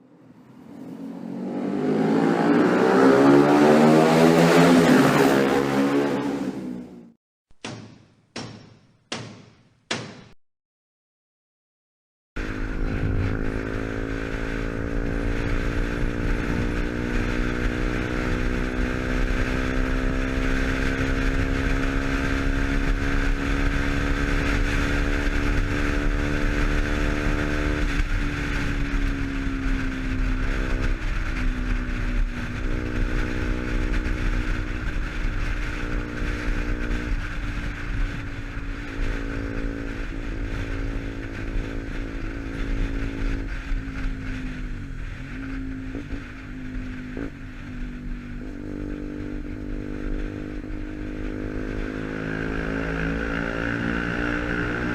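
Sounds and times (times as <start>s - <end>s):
motorcycle engine running: 12.4s - 54.9s.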